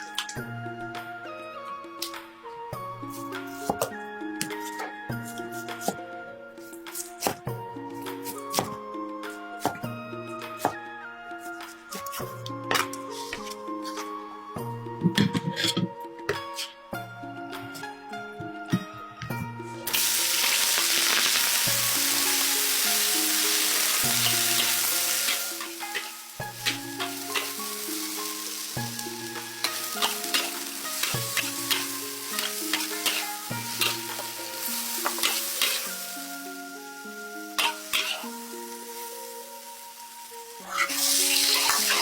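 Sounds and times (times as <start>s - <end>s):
background music: 0.0s - 42.0s
food sizzling in hot oil: 19.9s - 42.0s
utensil scraping in a pan: 23.4s - 36.0s, 37.6s - 38.4s, 40.6s - 42.0s.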